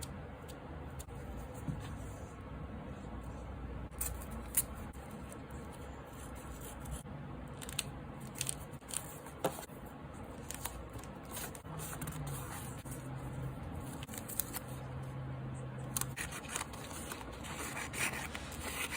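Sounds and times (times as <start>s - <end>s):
low background hum: 0.0s - 18.9s
paper being handled: 10.3s - 14.9s, 15.9s - 18.9s
scissors cutting paper: 15.9s - 18.9s.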